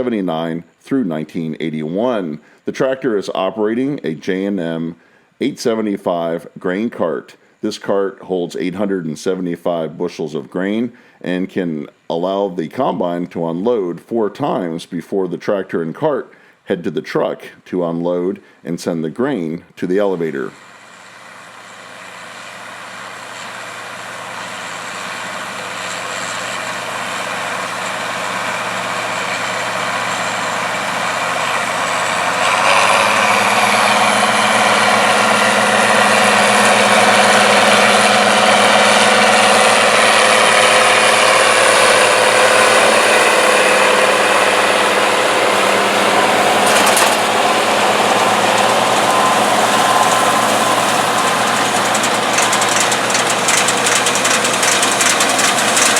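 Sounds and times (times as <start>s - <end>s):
tractor engine: 20.4s - 55.9s
combine harvester diesel engine: 20.5s - 55.9s.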